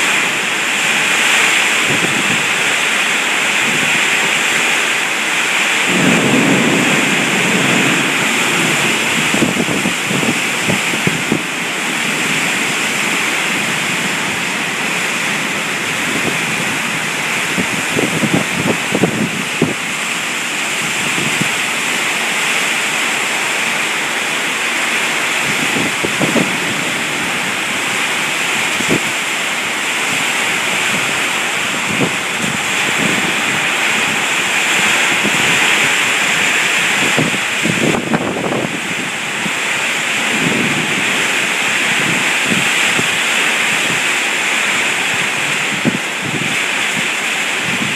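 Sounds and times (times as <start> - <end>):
heavy rain falling: 0.0 - 47.9
louder rain splashes: 0.0 - 47.9.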